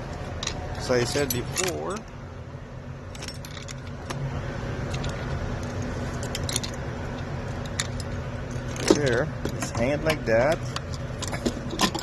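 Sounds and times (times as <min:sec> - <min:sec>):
steady low hum: 0:00.0 - 0:12.0
small metal parts clinking: 0:03.1 - 0:04.1, 0:04.8 - 0:12.0.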